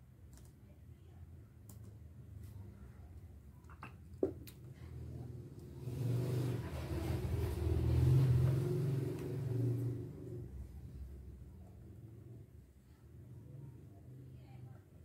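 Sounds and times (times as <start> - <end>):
vehicle engine rumbling: 4.8 - 11.1.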